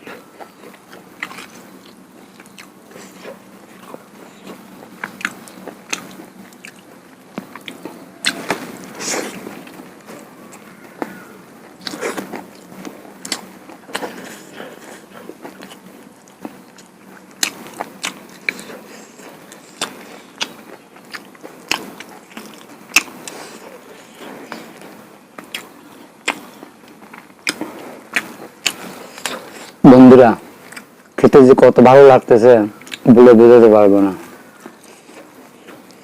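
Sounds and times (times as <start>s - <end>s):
person chewing food: 0.0s - 29.8s, 30.6s - 31.2s, 32.8s - 33.0s, 34.3s - 36.0s.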